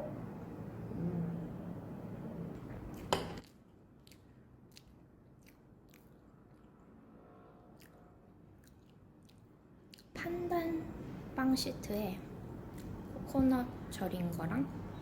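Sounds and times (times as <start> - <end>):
soft chewing: 2.5 - 7.1, 7.7 - 10.2, 12.7 - 13.0.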